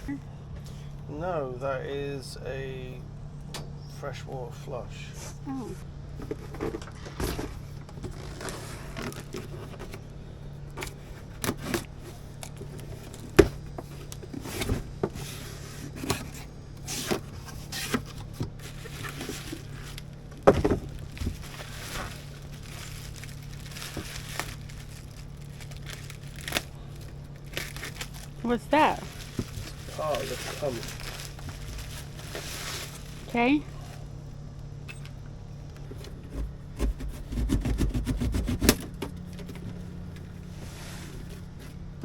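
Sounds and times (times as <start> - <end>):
steady low hum: 0.0 - 42.0
equipment knocks and scrapes: 6.2 - 10.0
packaging crinkling: 17.6 - 33.4.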